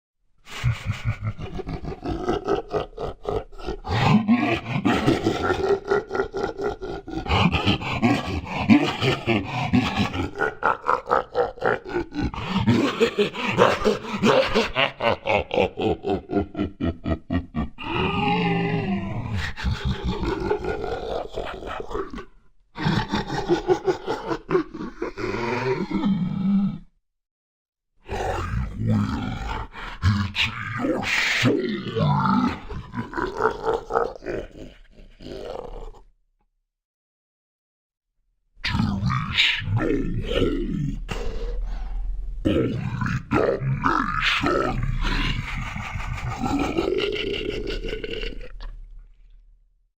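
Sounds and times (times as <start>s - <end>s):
deep demon voice laughing: 0.4s - 26.9s, 28.0s - 36.1s, 38.6s - 49.5s
low growl: 24.6s - 27.0s, 28.0s - 36.1s, 38.6s - 49.6s.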